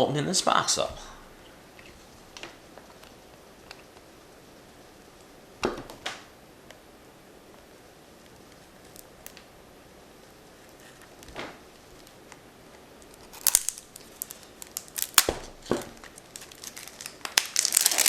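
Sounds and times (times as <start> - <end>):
packaging crinkling and clicking: 13.0 - 18.0.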